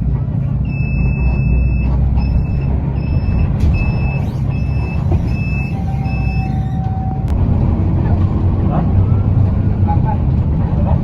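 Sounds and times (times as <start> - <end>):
bus engine running: 0.0 - 11.0
high electronic warning beeps: 0.7 - 6.6.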